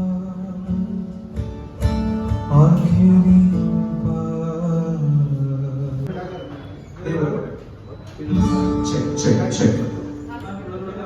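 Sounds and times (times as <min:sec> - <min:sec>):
held guitar melody notes: 0:00.0 - 0:06.1, 0:08.3 - 0:10.8
acoustic guitar strumming: 0:00.0 - 0:06.7, 0:08.3 - 0:10.7.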